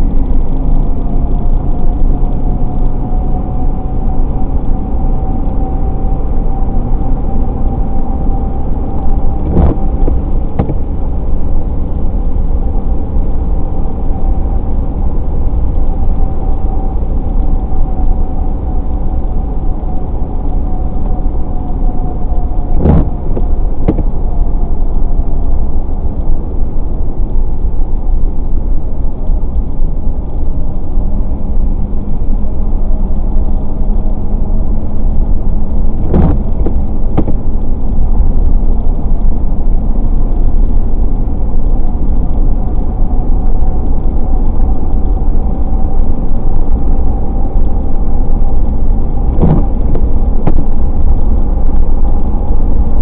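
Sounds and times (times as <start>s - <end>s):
car road and engine noise: 0.0s - 53.0s.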